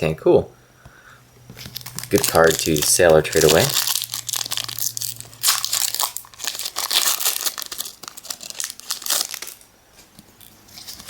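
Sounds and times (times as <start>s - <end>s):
foil wrapper crinkling: 1.6s - 10.1s, 10.7s - 11.0s.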